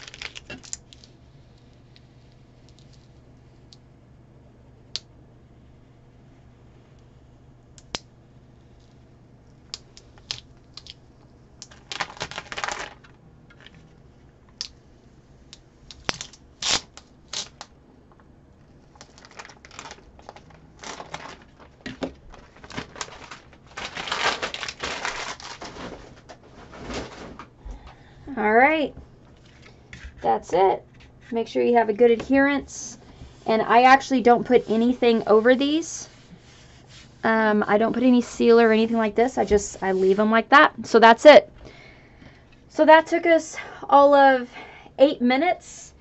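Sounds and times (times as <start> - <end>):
tape peeling clicks and crinkling: 0.0 - 3.1, 8.8 - 11.0, 11.6 - 13.9, 14.5 - 14.8, 15.5 - 18.3, 18.9 - 27.1.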